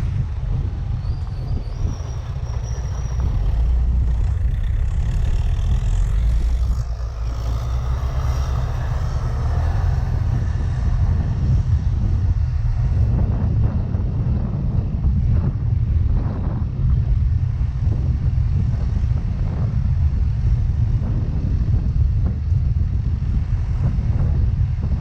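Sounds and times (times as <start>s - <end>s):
wind rumble on microphone: 0.0s - 25.0s
scooter engine running: 0.3s - 8.9s.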